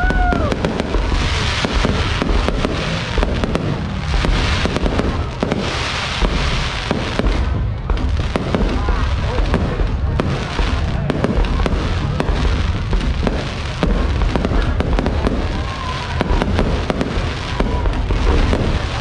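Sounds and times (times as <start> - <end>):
continuous low rumble: 0.0 - 19.0.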